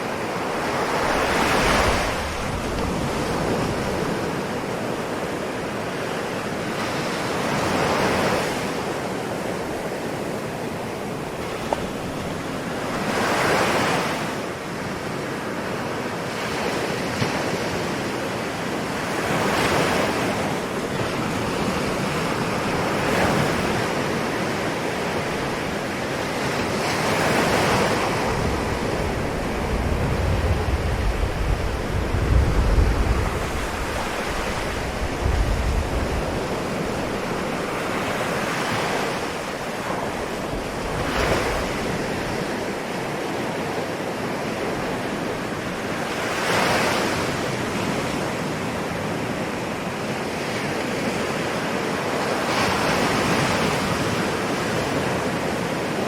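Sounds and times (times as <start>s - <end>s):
wind rumble on microphone: 0.0s - 15.8s, 16.8s - 56.0s
ocean waves washing onto shore: 0.0s - 56.0s.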